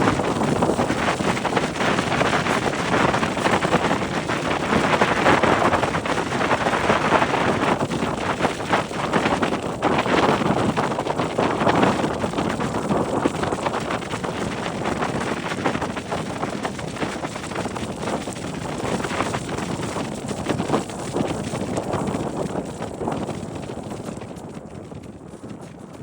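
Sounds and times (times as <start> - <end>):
wind buffeting microphone: 0.0 - 26.0.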